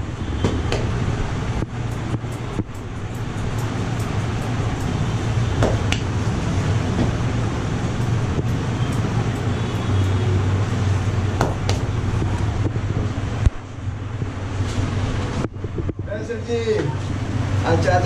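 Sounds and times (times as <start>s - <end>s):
road traffic rumble: 0.0s - 18.0s
sharp taps: 5.6s - 6.1s, 11.4s - 11.9s
wind on microphone: 11.9s - 16.2s.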